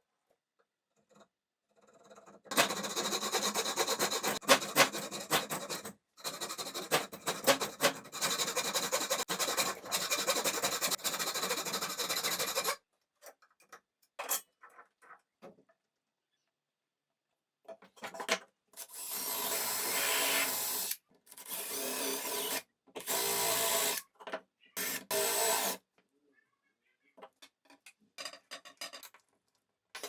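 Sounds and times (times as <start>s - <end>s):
hand file rasping: 2.5s - 12.8s.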